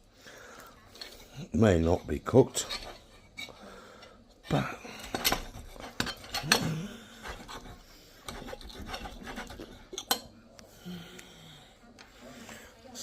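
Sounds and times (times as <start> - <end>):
knife cutting and scraping: 2.5 - 3.5, 5.1 - 10.2
cutlery clicking on dish: 5.0 - 7.7, 8.3 - 10.3.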